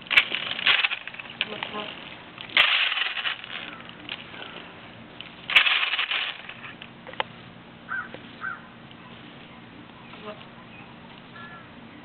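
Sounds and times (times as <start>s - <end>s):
toy truck drivetrain clicking: 0.0s - 1.7s, 2.4s - 4.2s, 5.5s - 6.8s.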